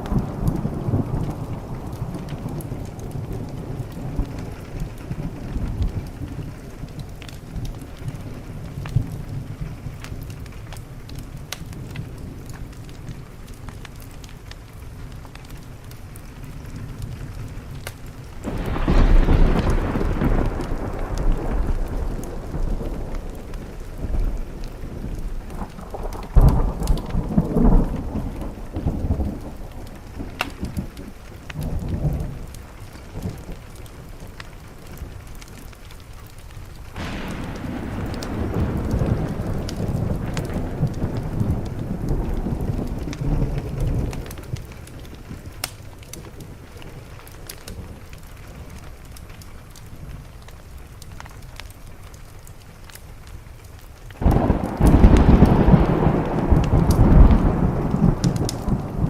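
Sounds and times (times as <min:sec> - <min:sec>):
steady rain: 0:00.0 - 0:59.0
thunder rolling: 0:16.6 - 0:35.4, 0:36.9 - 0:48.1, 0:54.2 - 0:59.0.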